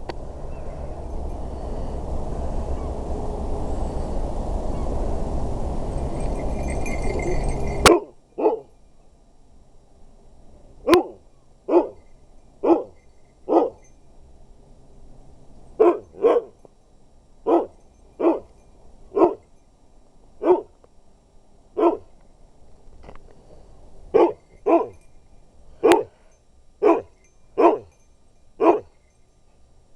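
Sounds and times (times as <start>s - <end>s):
dog barking huskily: 7.8s - 8.7s, 10.9s - 12.0s, 12.6s - 13.8s, 15.8s - 16.6s, 17.5s - 18.5s, 19.2s - 19.4s, 20.4s - 20.7s, 21.8s - 22.1s, 24.2s - 25.0s, 25.8s - 26.2s, 26.8s - 27.9s, 28.6s - 28.9s.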